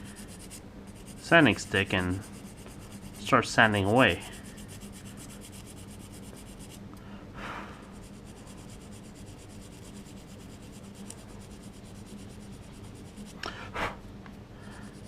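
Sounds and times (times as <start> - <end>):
sanding stick scratching on resin: 0.0 - 6.8, 7.9 - 13.4, 14.7 - 15.0
steady low hum: 0.0 - 15.0.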